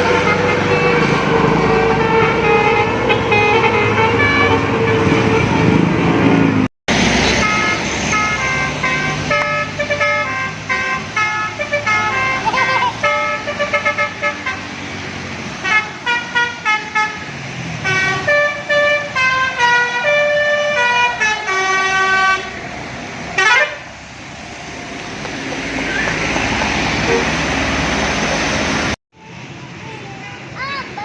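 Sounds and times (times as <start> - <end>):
bus musical air horn: 0.0 - 6.0, 6.9 - 22.6, 23.4 - 23.9
bus engine: 0.0 - 31.0
road noise: 0.0 - 31.0.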